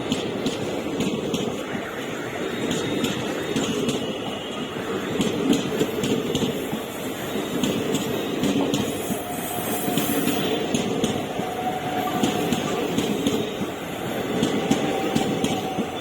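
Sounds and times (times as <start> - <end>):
train rumbling past: 0.0 - 16.0.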